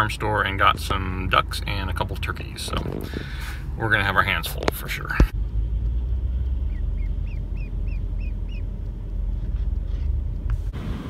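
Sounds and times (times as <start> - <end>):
car rumbling on road: 0.0 - 11.0
chicks peeping: 6.6 - 8.7.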